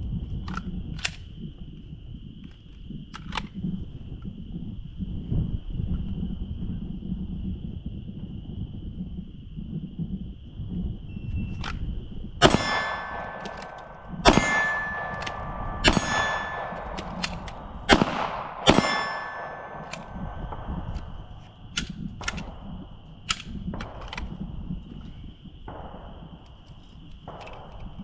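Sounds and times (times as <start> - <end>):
steel targets ringing: 12.4 - 20.4
pistol shots: 12.4 - 24.4.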